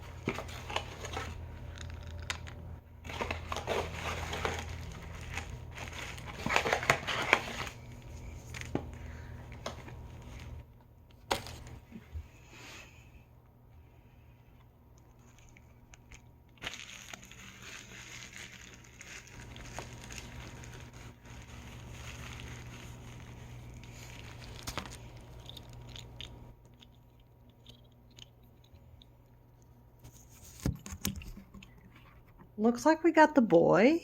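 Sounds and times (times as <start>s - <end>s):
plastic packaging crinkling: 0.0s - 11.9s, 15.1s - 28.7s.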